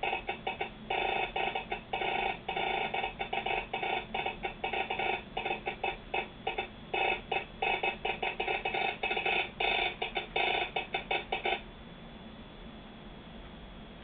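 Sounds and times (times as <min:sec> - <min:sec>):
buzzing morse code signal: 0:00.0 - 0:11.7.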